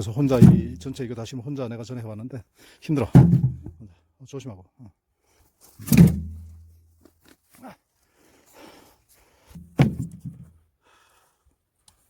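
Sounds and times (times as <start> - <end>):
logs knocking in metal cart: 0.3 - 1.0, 3.1 - 3.8
heavy thump with clatter: 3.1 - 3.8, 5.8 - 6.5, 9.6 - 10.5.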